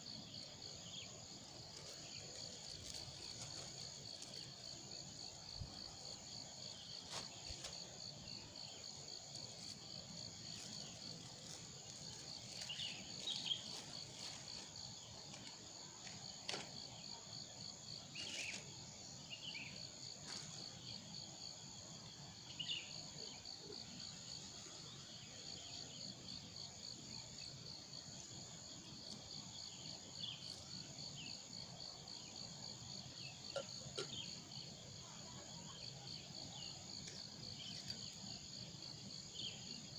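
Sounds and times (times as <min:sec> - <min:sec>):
crickets trilling: 0:00.0 - 0:39.9.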